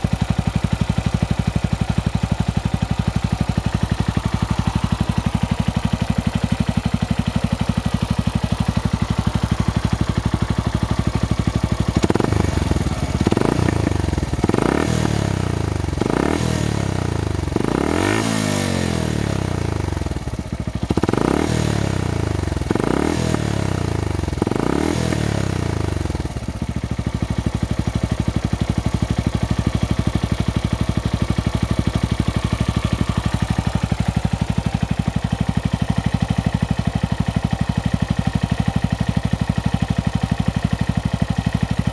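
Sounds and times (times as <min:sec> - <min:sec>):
engine idling: 0:00.0 - 0:41.9
engine revving in throttle blips: 0:12.0 - 0:19.6, 0:21.0 - 0:25.8.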